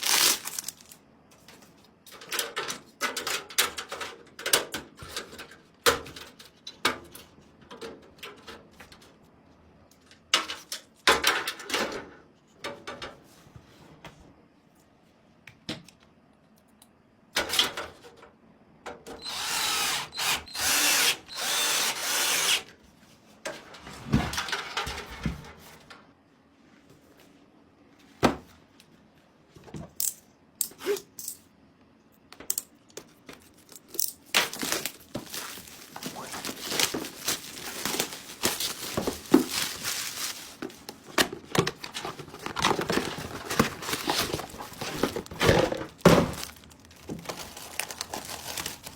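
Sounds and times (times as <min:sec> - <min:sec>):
power screwdriver running: 0:19.2 - 0:22.6.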